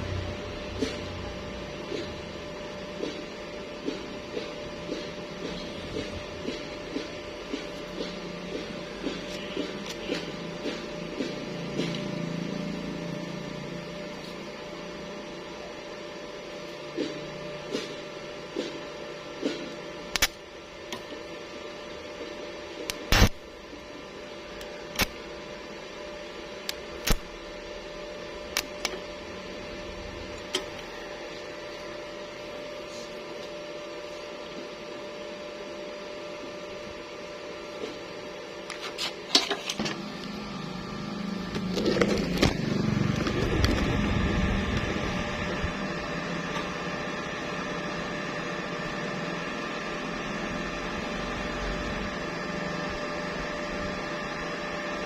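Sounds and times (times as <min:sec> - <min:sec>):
electrical machine hum: 0:00.0 - 0:55.0
loud steady noise: 0:40.2 - 0:53.1.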